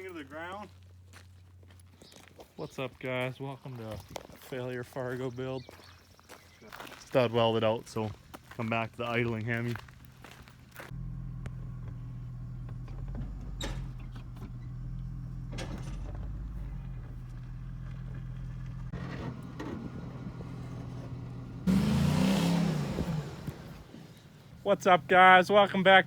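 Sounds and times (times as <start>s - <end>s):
engine idling: 10.8s - 26.0s.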